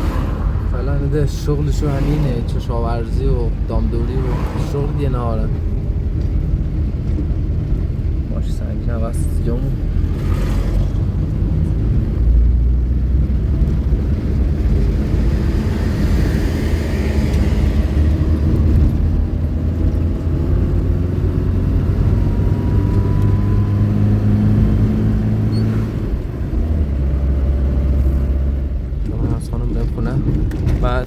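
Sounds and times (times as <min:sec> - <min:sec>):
car engine driving: 0:00.0 - 0:31.0
road rumble: 0:00.0 - 0:31.0.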